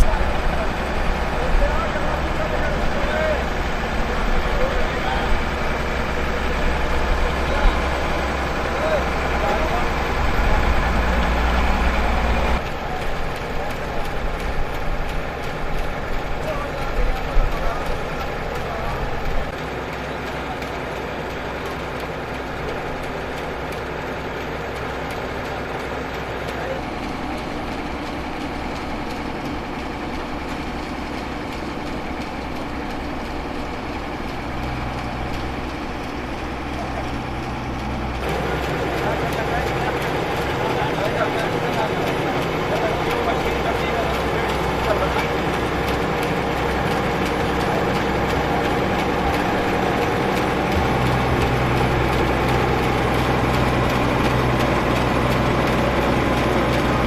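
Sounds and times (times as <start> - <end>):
diesel engine running: 0.0 - 57.0
low hum: 44.9 - 57.0
deep steady tone: 46.4 - 55.8.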